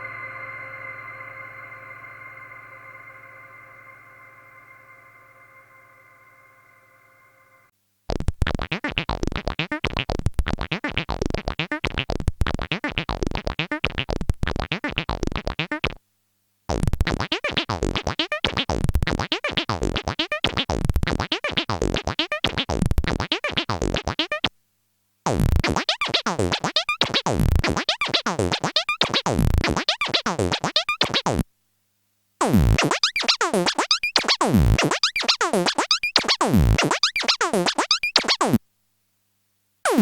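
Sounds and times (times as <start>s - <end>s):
faint held synth tone: 0.0s - 7.7s
synthesizer repeating sequence: 25.6s - 31.4s, 32.4s - 38.6s.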